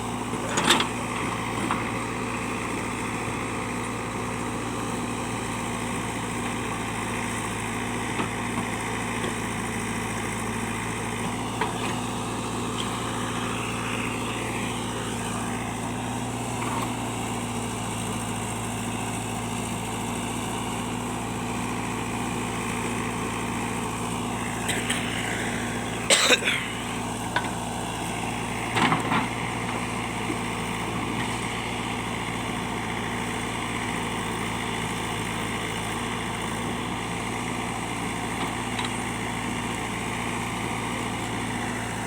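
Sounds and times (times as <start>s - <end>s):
diesel engine running: 0.0s - 42.0s.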